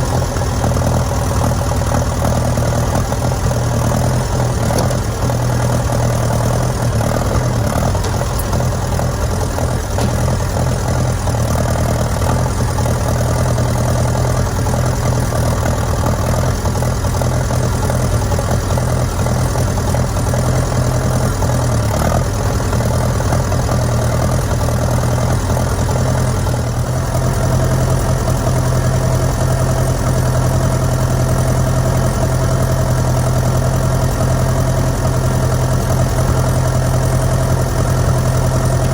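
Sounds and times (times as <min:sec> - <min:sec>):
engine humming steadily: 0:00.0 - 0:38.9.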